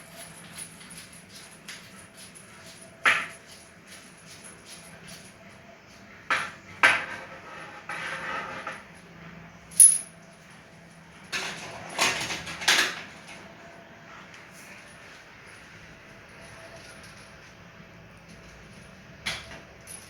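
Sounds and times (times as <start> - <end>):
metal parts clinking: 9.7 - 10.1.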